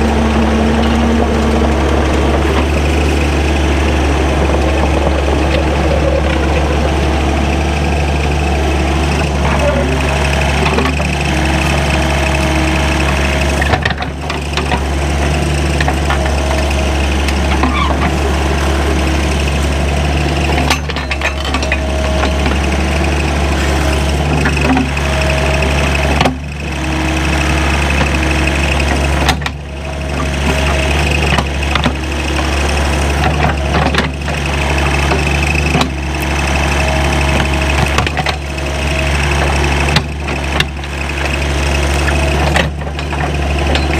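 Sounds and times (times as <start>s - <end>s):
tractor diesel engine running: 0.0s - 43.9s
knocks and rattles: 0.6s - 11.2s, 20.5s - 23.2s.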